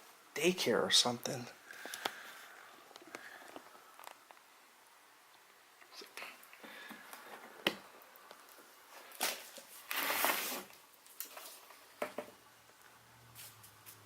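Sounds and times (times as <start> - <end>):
rustling crinkle: 8.2 - 12.0, 13.3 - 14.0.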